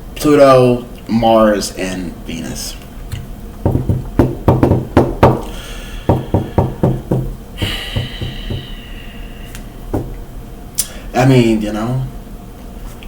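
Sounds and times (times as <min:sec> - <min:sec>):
sharp knocks: 0:03.6 - 0:05.5, 0:06.1 - 0:08.8, 0:09.9 - 0:10.2
high-pitched hiss: 0:05.5 - 0:10.0.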